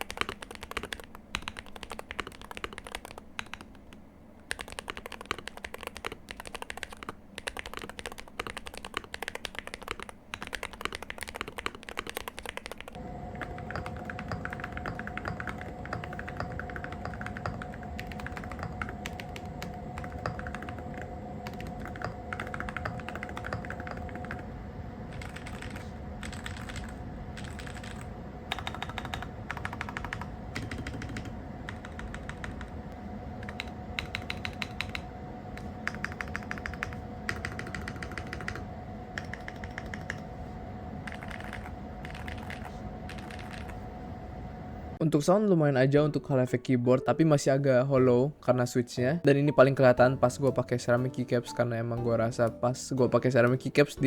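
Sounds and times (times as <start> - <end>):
fast keyboard typing: 0.0 - 40.4, 41.0 - 43.8
faint steady tones: 12.2 - 54.0.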